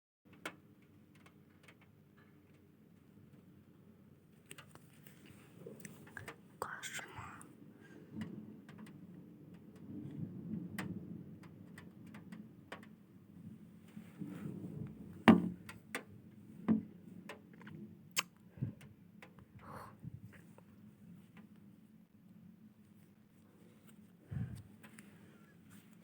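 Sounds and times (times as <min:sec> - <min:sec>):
strong wind gusting: 0:13.4 - 0:15.7, 0:24.2 - 0:24.7.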